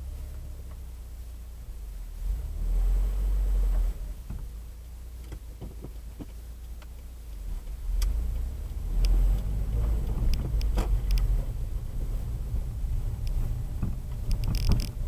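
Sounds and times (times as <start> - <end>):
car driving rumble: 0.0 - 15.0
clunks and knocks: 13.2 - 15.0.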